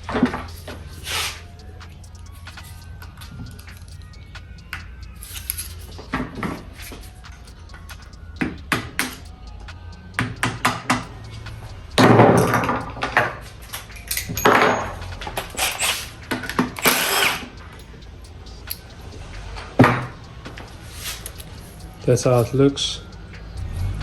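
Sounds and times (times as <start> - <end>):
metal parts clicking: 0.0 - 9.3, 12.0 - 19.0, 19.6 - 23.0
metal gearbox parts knocking: 12.0 - 17.9.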